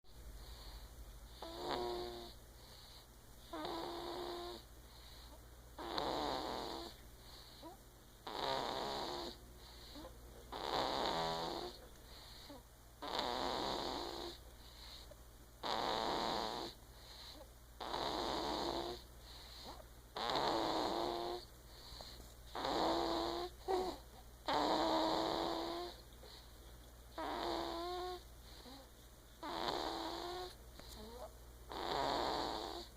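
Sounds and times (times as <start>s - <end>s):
person snoring: 1.4s - 2.4s, 7.5s - 11.8s, 12.4s - 15.0s, 15.6s - 19.0s, 19.6s - 21.4s, 22.6s - 26.0s, 27.2s - 32.9s.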